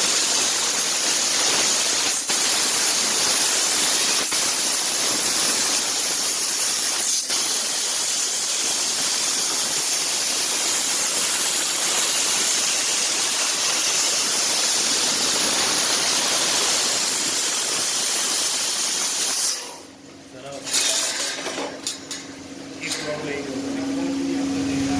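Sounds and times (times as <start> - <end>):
laser cutter hissing: 0.0 - 20.0.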